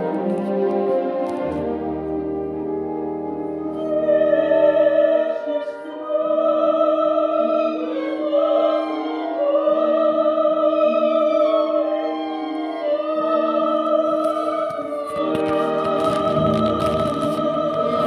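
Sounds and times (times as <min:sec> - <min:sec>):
orchestra playing: 0:00.0 - 0:18.0
soprano singing with vibrato: 0:03.8 - 0:18.0.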